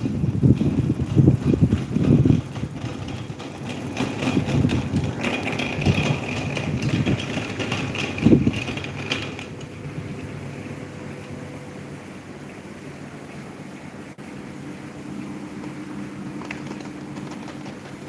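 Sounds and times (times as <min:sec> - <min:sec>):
wind buffeting microphone: 0:00.0 - 0:10.6
electric fan running: 0:00.0 - 0:18.0.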